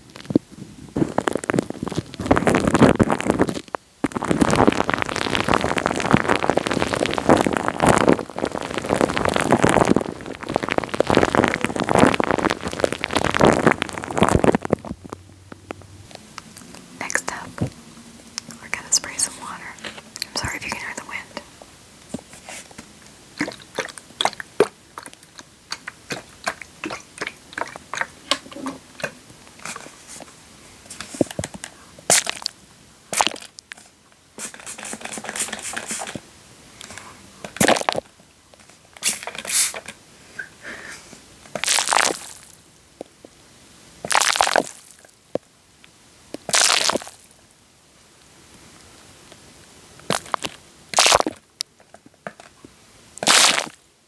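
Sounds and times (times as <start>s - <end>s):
wet sticky crackling: 1.1s - 36.2s, 41.5s - 42.7s, 46.4s - 47.3s, 50.0s - 51.6s, 53.2s - 53.8s.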